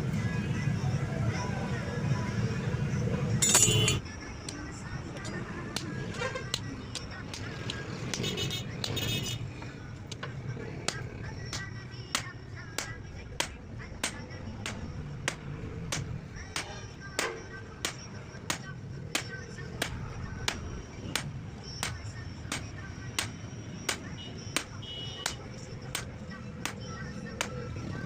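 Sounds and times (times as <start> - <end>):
hammer striking steel on anvil: 3.4 - 4.0, 10.9 - 20.6.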